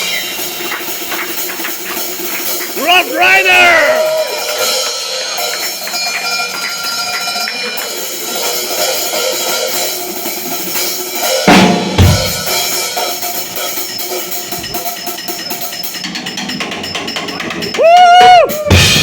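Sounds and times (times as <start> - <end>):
cymbals ringing: 0.0 - 19.0.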